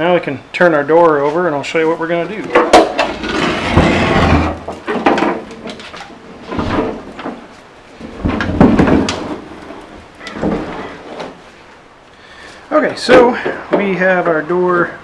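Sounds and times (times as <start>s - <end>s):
steel door clunking and scraping: 2.5s - 11.5s.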